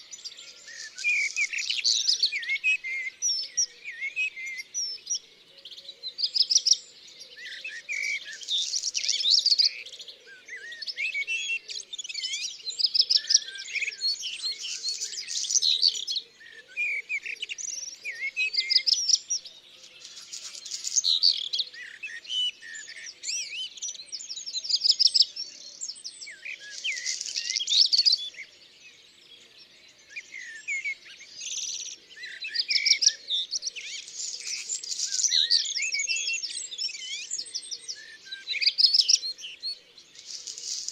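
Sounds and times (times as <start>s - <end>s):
songbirds singing and chirping: 0.0s - 40.9s.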